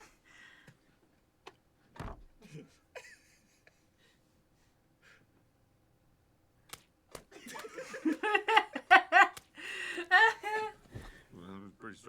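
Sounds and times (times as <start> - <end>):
person laughing: 7.4 - 10.8.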